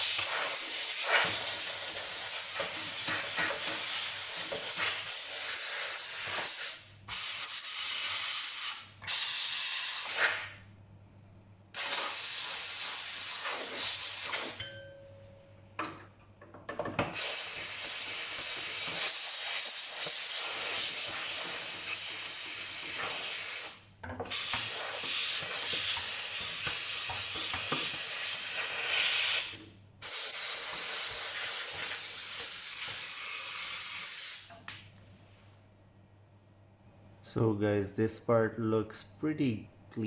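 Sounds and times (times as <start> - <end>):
steam cleaner hissing: 0.0 - 10.5, 11.8 - 14.6, 17.1 - 34.5.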